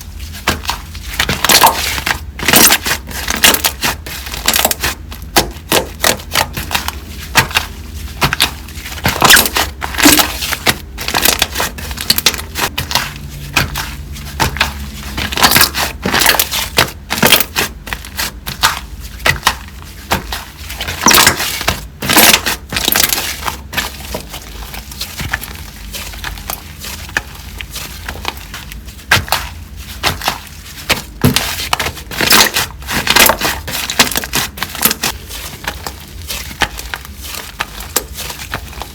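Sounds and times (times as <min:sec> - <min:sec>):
slime crackling and popping: 0:00.4 - 0:38.9.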